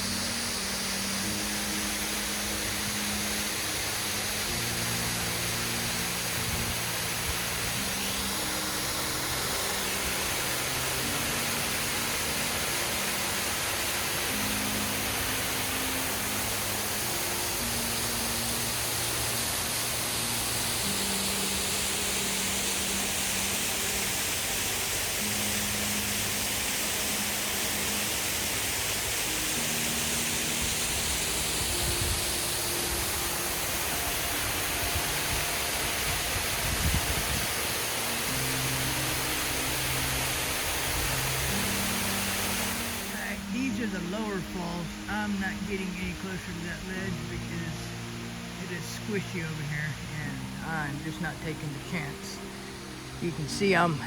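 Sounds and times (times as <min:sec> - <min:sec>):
slow low background music: 0:00.0 - 0:54.0
waterfall roar: 0:00.0 - 0:54.0.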